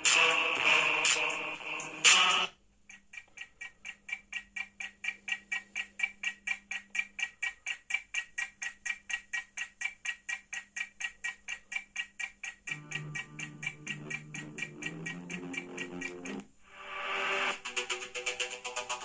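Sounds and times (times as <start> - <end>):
rapid pitched ticks: 0.0 - 16.6
faint steady hum: 10.2 - 17.6.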